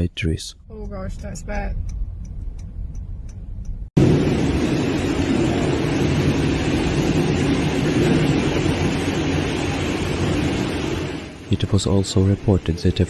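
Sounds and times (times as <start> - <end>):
storm wind: 3.7 - 13.0
heavy rain: 4.0 - 13.0.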